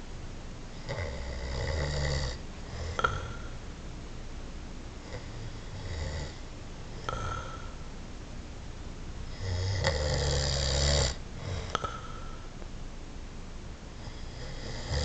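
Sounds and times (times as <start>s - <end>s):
person snoring: 0.8s - 3.6s, 5.1s - 6.4s, 7.0s - 7.9s, 9.3s - 12.5s, 14.0s - 15.0s.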